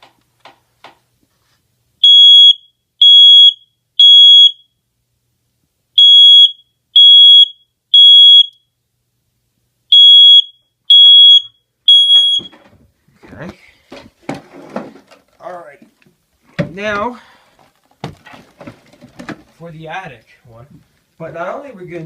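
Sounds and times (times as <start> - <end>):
smoke detector alarm beeps: 2.0 - 4.8, 6.0 - 8.7, 9.9 - 12.6.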